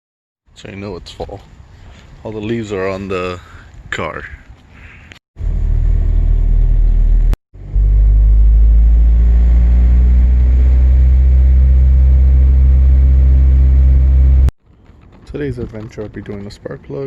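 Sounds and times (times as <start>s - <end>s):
car engine droning: 5.4s - 14.5s.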